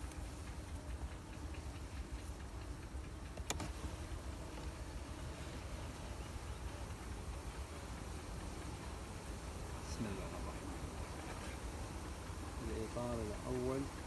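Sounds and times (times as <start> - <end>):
honeybees buzzing: 3.6 - 14.0.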